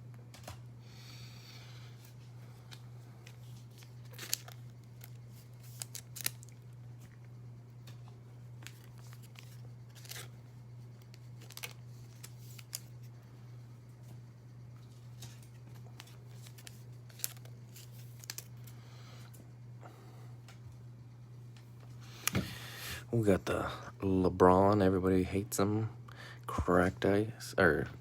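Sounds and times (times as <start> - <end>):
steady low hum: 0.0 - 28.0
cards scraping and clicking: 2.0 - 7.2, 7.8 - 10.4, 11.0 - 13.2, 14.8 - 18.8.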